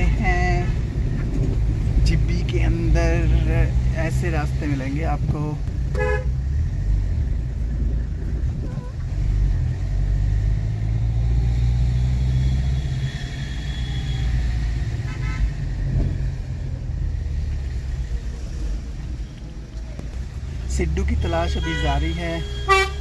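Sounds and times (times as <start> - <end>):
car engine and tyre rumble: 0.0 - 23.0
car horn toot: 5.9 - 6.4, 15.0 - 15.6, 21.1 - 23.0.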